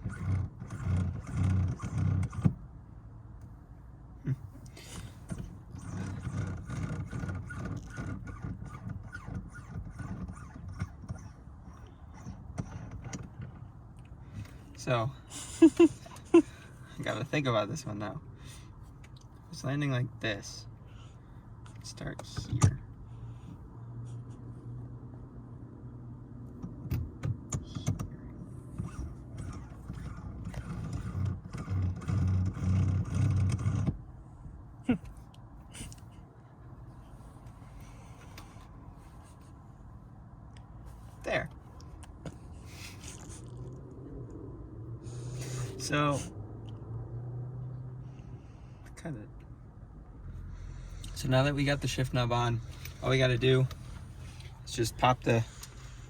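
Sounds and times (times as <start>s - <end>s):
shift knob clicking and rubbing: 0.0s - 2.6s, 4.5s - 13.7s, 26.5s - 34.0s.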